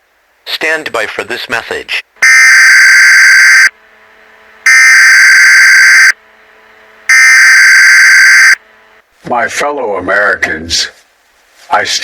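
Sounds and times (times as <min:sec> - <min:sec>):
harsh electronic data bursts: 0:02.2 - 0:03.7, 0:04.7 - 0:06.2, 0:07.1 - 0:08.6.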